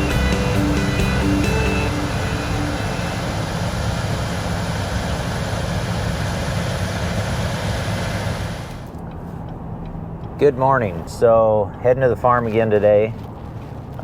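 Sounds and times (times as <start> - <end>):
music: 0.0 - 3.3
constant rushing noise: 0.0 - 14.0
vehicle engine running: 0.0 - 14.0.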